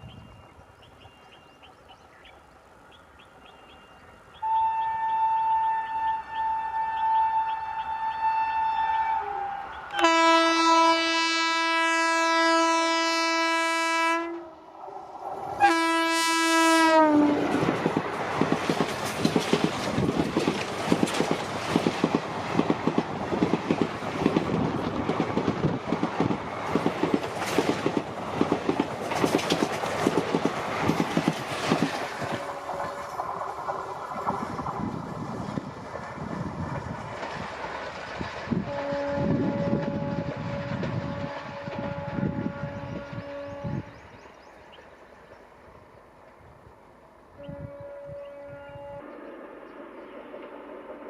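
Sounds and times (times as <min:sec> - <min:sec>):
locomotive horn blasts: 0:04.4 - 0:14.7, 0:15.6 - 0:17.6, 0:38.6 - 0:44.1, 0:47.4 - 0:49.2
train wheels clickety-clack: 0:17.0 - 0:44.0.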